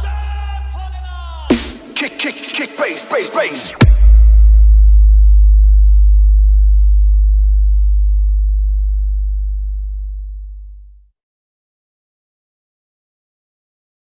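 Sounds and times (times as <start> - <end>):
deep electronic sub-bass tone: 3.8 - 11.1.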